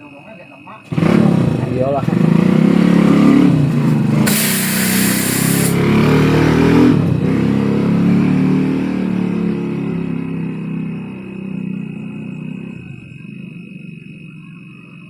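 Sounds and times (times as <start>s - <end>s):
engine running loudly: 0.9s - 10.2s
loud hissing air: 4.2s - 6.0s.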